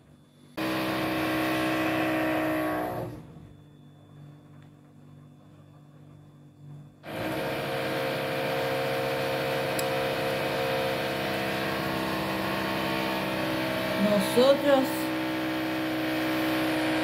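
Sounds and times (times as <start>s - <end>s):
electric drill droning: 0.6s - 3.3s, 7.0s - 17.0s.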